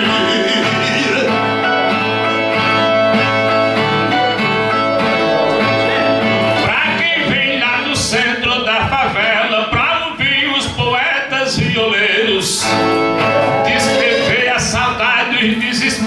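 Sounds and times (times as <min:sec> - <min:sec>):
person singing: 0:00.0 - 0:01.7, 0:05.1 - 0:16.0
ten-string viola strummed and plucked: 0:00.0 - 0:08.1, 0:12.6 - 0:14.7.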